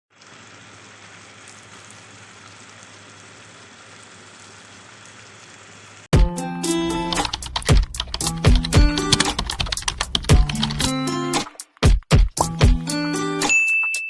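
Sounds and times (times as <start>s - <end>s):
loud music: 6.2s - 13.5s.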